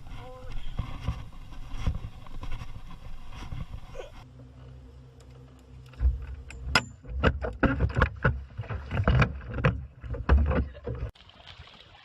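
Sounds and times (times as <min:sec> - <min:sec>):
knocks and thumps on boat: 0:06.0 - 0:11.1.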